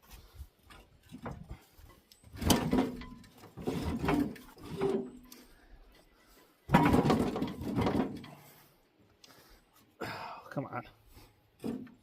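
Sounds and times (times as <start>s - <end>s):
metal parts scraping and clunking: 0.7s - 8.8s, 11.5s - 12.0s.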